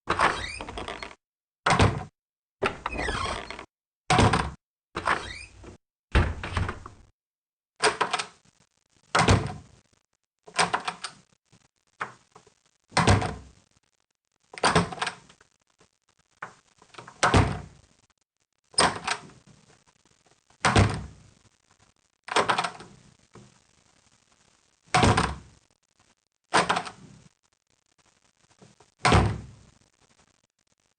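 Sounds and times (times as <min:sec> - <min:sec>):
doors shutting and banging: 0:00.1 - 0:07.1.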